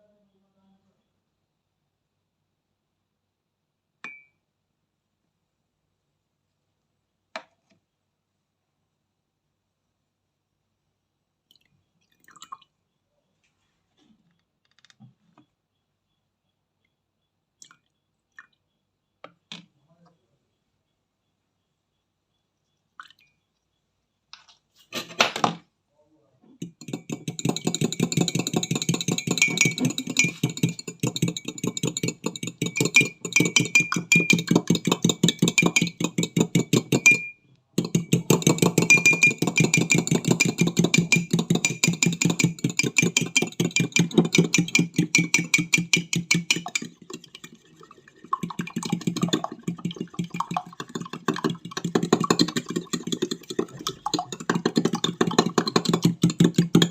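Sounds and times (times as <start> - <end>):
batter beaten in a mug: 26.6 - 47.6, 48.3 - 56.9.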